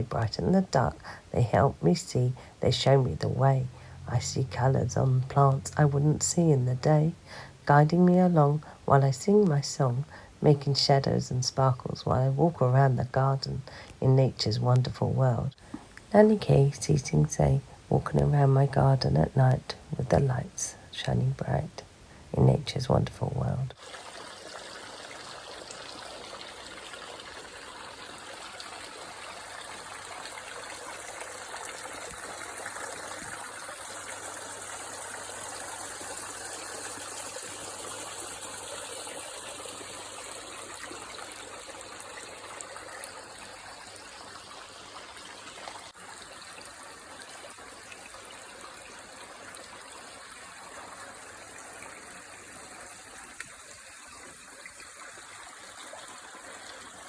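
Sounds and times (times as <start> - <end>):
water trickling over rocks: 22.4 - 57.0.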